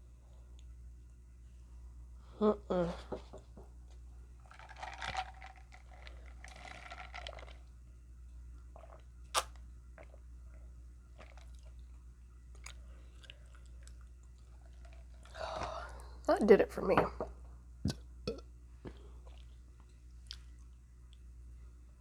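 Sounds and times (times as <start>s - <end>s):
person chewing food: 4.4s - 7.7s, 8.8s - 15.4s, 17.9s - 21.2s.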